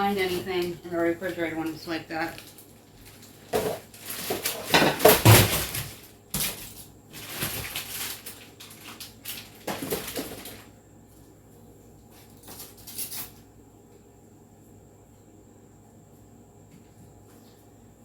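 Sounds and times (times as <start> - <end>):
food containers clattering: 0.0 - 10.7
packages rustling: 0.0 - 10.7
containers set down knocking: 3.5 - 6.6.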